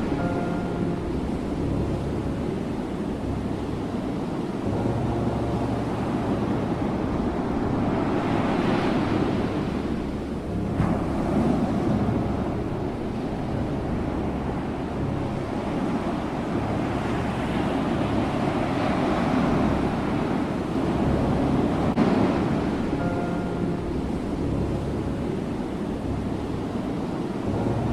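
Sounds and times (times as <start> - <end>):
ocean waves washing: 0.0 - 27.9.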